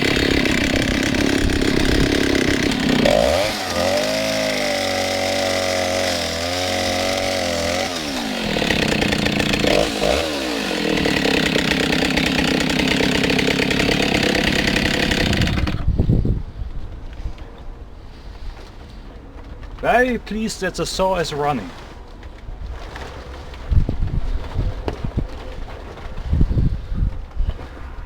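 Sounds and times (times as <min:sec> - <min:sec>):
chainsaw engine revving: 0:00.0 - 0:15.8.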